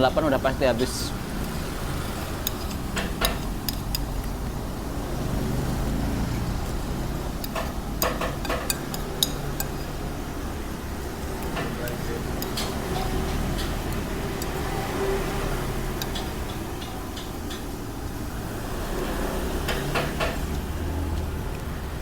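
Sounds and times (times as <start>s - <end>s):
street traffic rumble: 0.0s - 22.0s
spoon clinking against plate: 7.3s - 10.2s.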